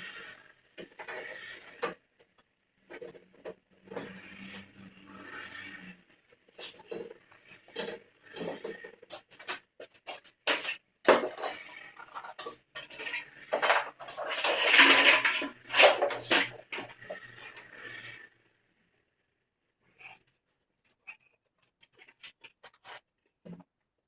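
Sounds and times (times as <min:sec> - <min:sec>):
metal clinking and clattering: 0:06.5 - 0:17.7.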